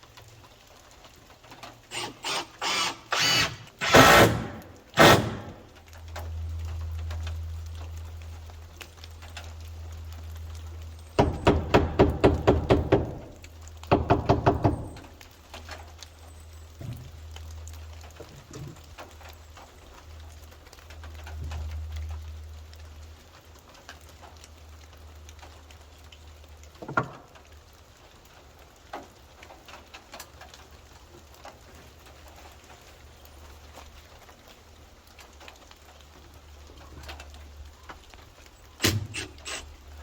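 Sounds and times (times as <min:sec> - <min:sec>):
rapid knocking: 0:13.9 - 0:14.8.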